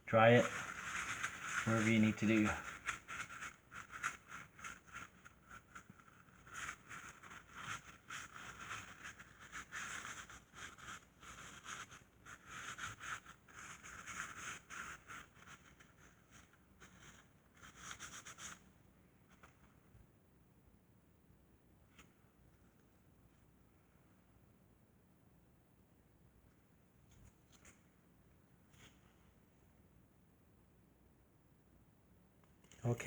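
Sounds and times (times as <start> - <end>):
rag rubbing on metal case: 0.2 - 18.4.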